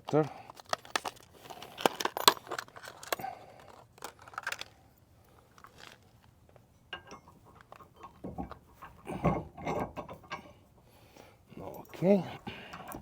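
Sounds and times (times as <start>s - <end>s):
metal clicks and knocks: 6.9s - 10.6s, 11.7s - 13.0s.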